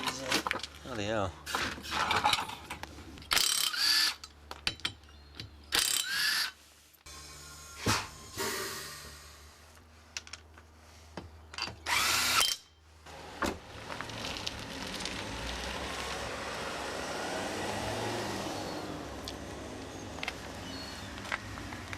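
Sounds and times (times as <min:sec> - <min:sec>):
impact wrench burst: 0:07.8 - 0:09.4.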